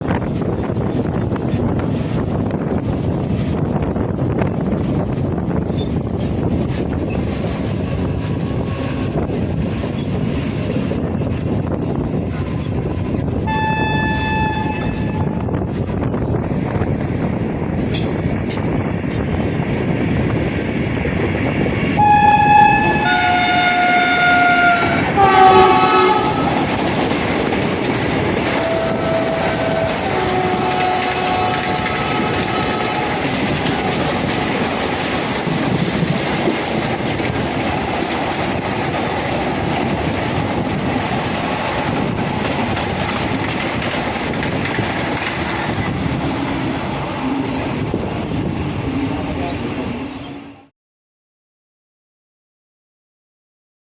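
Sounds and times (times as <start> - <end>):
train rumble and wheel clatter: 0.0 - 50.7
train horn blasts: 13.4 - 15.4, 21.9 - 26.8, 28.5 - 33.3.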